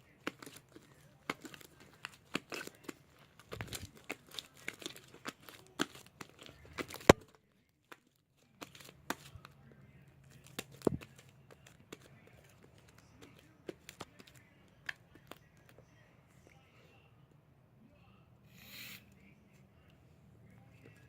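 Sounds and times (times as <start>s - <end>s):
slime kneaded with sticky pops: 0.0s - 7.2s.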